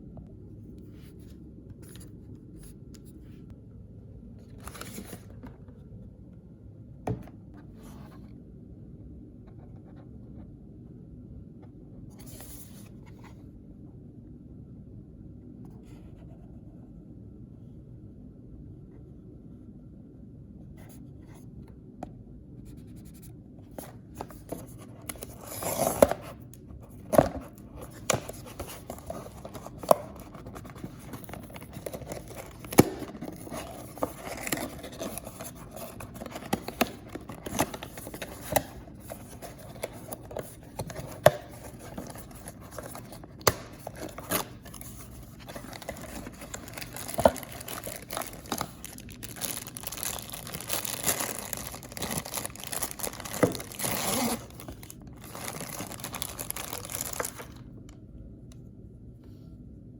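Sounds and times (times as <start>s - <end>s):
paper packaging rustling and tearing: 4.5s - 5.4s, 23.7s - 57.6s.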